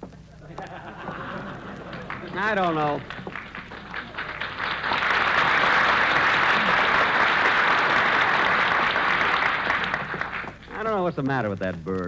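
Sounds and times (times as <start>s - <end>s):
audience applause: 0.7s - 11.0s.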